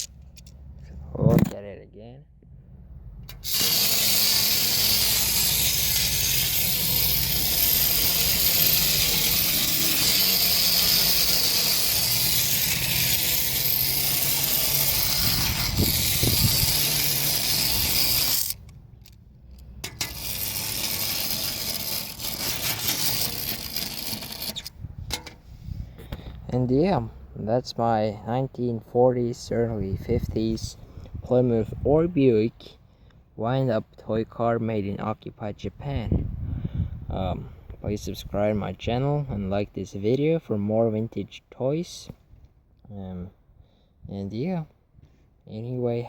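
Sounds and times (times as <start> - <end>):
wind-up toy car whirring: 0.0 - 0.6, 3.3 - 24.8.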